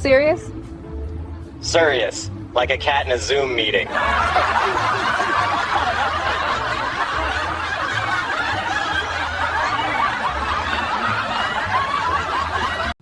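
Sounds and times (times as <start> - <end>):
people laughing together: 3.8 - 13.0.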